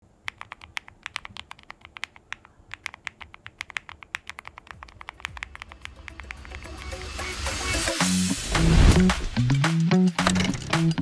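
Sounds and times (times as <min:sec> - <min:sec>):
fast typing on mechanical keyboard: 0:00.2 - 0:06.4
low rumble: 0:05.7 - 0:09.5.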